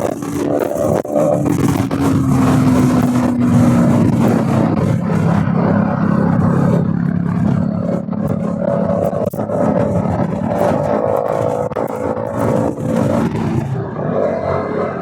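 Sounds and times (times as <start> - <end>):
motorcycle engine running: 0.0 - 14.1
road and wind noise: 0.0 - 15.0.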